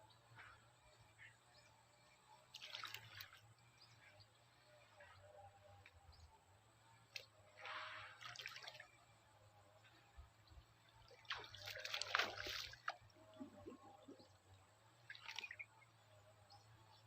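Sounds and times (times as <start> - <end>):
water splashing and dripping: 2.5 - 3.4, 7.1 - 8.9, 11.0 - 13.1, 15.0 - 15.7.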